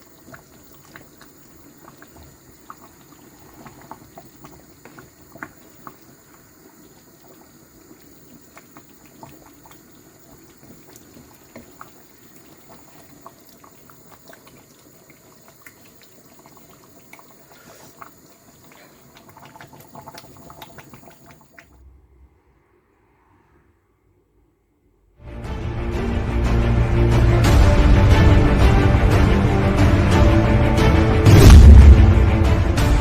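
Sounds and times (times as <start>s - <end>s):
soup boiling with bubbling pops: 0.0s - 21.8s.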